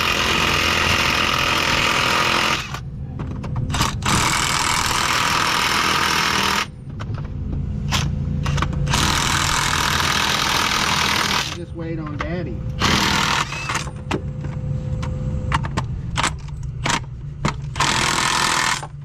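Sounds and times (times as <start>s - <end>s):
impact wrench hammering: 15.5s - 19.0s.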